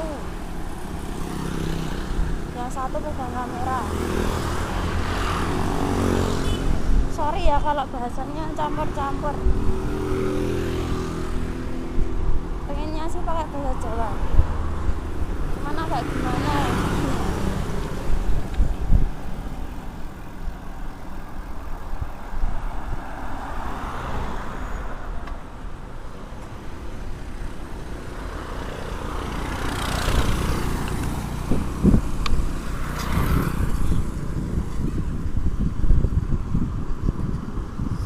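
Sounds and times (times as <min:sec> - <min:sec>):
road traffic: 0:00.0 - 0:38.0
vehicles passing: 0:00.0 - 0:38.0
wind rumble on microphone: 0:02.0 - 0:23.4, 0:28.9 - 0:38.0.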